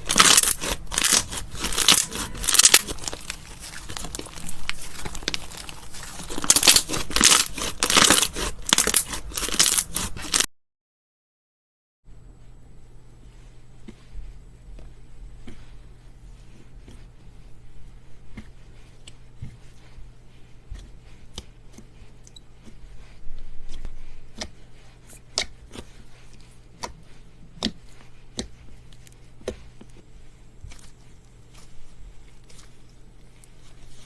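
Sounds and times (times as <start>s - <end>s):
crunchy slime crackling: 0.0s - 10.5s.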